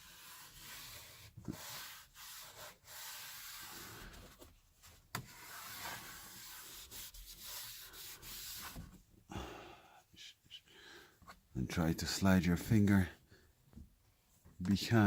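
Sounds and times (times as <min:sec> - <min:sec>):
cloth wiping strokes: 0:00.0 - 0:04.2, 0:05.3 - 0:08.9.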